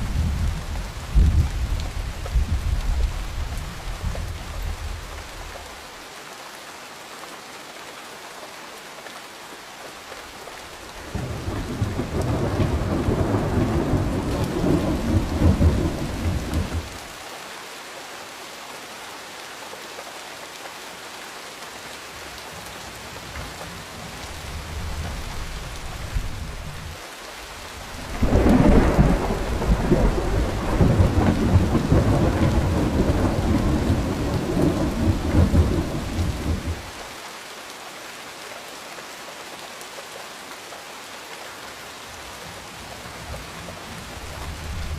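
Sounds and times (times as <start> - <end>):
steady rain: 0.0 - 44.9
thunder rolling: 11.2 - 16.9, 28.0 - 36.9.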